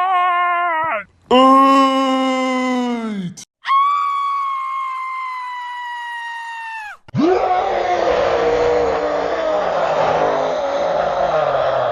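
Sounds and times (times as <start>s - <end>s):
high-pitched cartoon scream: 3.6s - 11.9s
harsh low cartoon scream: 6.8s - 11.9s.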